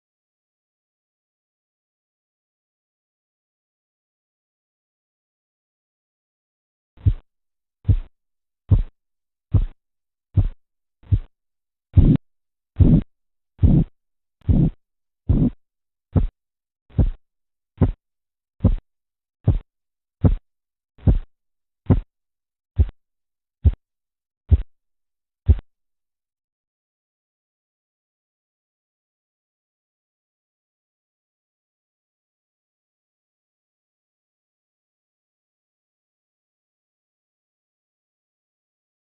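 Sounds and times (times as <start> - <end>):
heartbeat taps through stethoscope: 7.0 - 8.1, 8.7 - 9.8, 10.4 - 11.3, 12.0 - 12.2, 12.8 - 17.2, 17.8 - 18.0, 18.6 - 21.3, 21.9 - 22.1, 22.8 - 23.0, 23.6 - 23.8, 24.5 - 24.7, 25.5 - 25.7.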